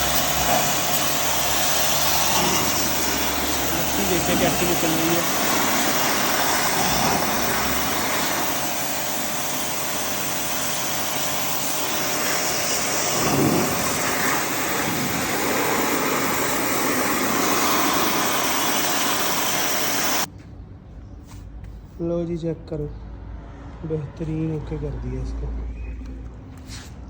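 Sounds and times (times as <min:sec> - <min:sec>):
pressure washer running: 0:00.0 - 0:20.3
water jet spraying metal coils: 0:00.0 - 0:20.3.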